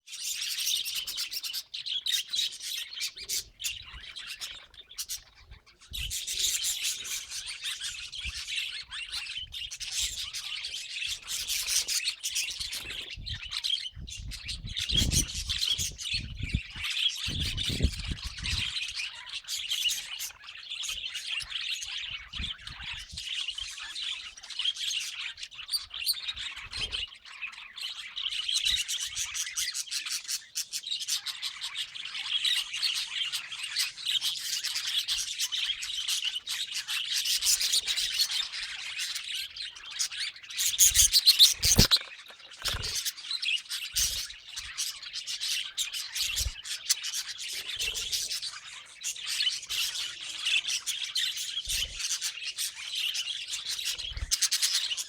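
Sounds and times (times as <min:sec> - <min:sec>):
budgerigars chattering and chirping: 0:00.1 - 0:55.0.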